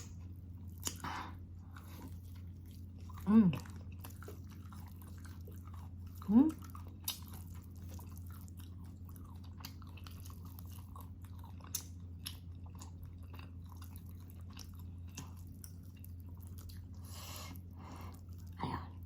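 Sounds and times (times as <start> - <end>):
steady low hum: 0.0 - 19.0
wet mouth chewing clicks: 6.6 - 16.9.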